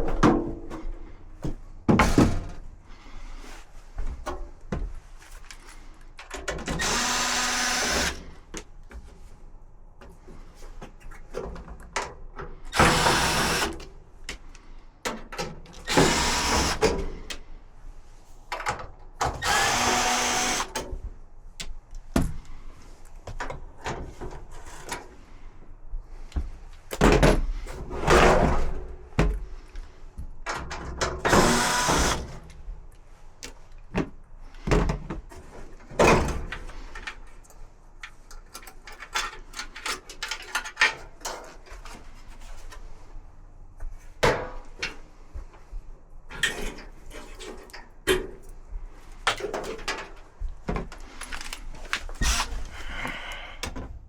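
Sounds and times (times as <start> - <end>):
knocks and clatter of parts: 0.0 - 2.7, 4.0 - 9.3, 10.0 - 17.5, 21.6 - 25.2, 26.2 - 32.5, 33.4 - 42.9, 43.8 - 45.7, 46.3 - 54.0
cordless drill running in bursts: 6.7 - 8.3, 12.8 - 13.8, 15.9 - 16.9, 19.4 - 20.8, 31.3 - 32.3.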